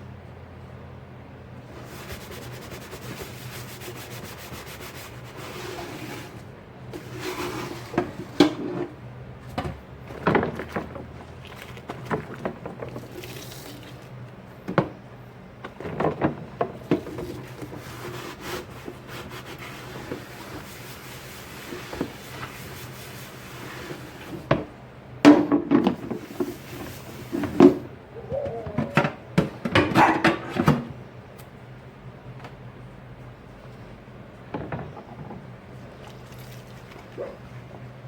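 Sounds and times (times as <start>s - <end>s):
scrubbing dishes: 9.6s - 14.2s, 25.4s - 30.7s.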